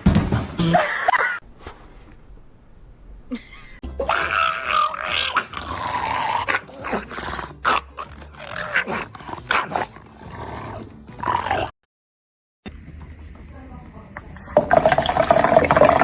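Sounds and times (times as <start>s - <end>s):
dog growling: 4.0s - 11.7s.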